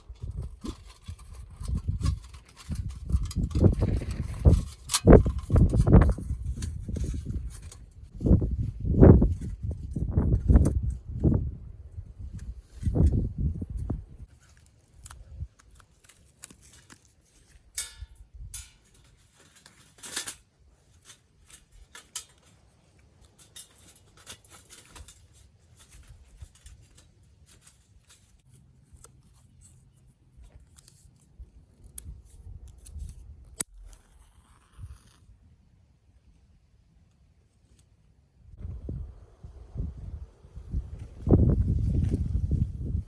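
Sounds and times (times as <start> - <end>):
small clicks and snips: 14.3 - 20.4.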